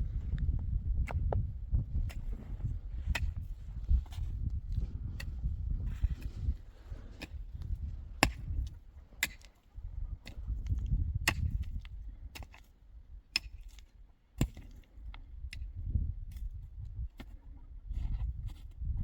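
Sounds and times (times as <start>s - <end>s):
low rumble: 0.0s - 8.8s
tool striking wood: 8.2s - 8.5s.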